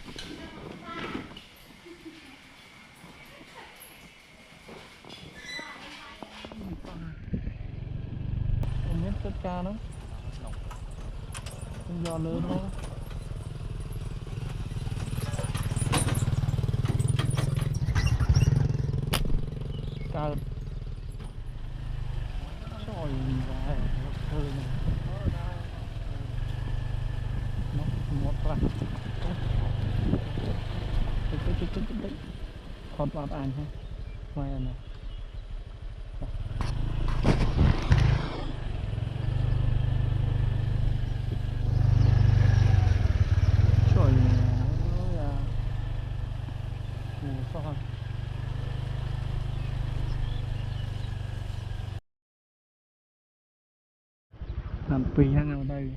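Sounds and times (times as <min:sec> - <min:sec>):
small engine running: 0:10.6 - 0:32.3, 0:36.3 - 0:52.0
sharp knocks and clatter: 0:36.2 - 0:38.4.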